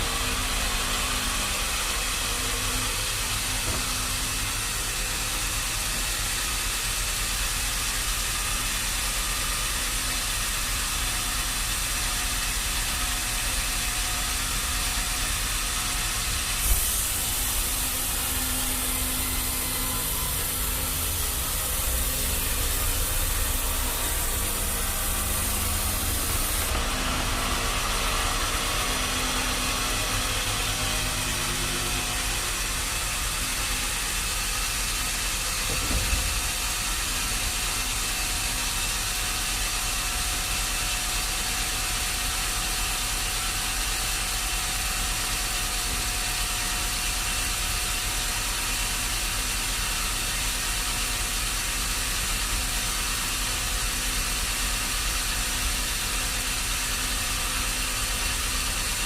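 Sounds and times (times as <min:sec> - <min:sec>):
sawmill machinery running: 0:00.0 - 0:59.0
high hiss: 0:16.4 - 0:26.7.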